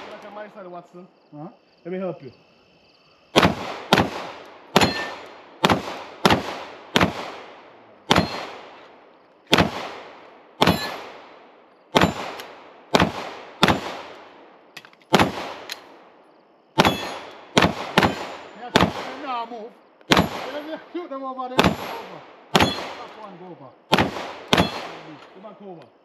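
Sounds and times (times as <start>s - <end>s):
gunshots: 0.0s - 0.4s, 3.3s - 14.5s, 15.1s - 16.0s, 16.7s - 19.5s, 20.1s - 20.9s, 21.5s - 25.5s
steel targets ringing: 16.8s - 17.3s.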